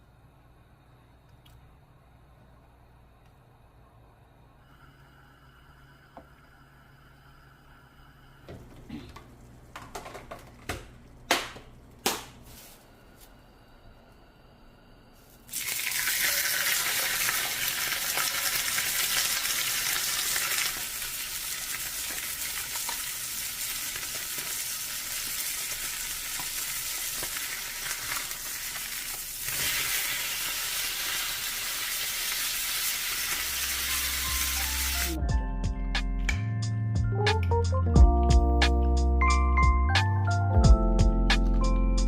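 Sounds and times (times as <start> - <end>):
food sizzling in hot oil: 15.5 - 35.2.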